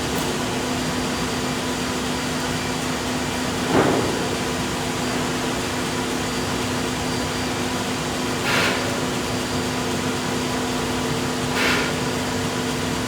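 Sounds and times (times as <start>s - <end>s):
sawmill machinery humming: 0.0s - 13.0s.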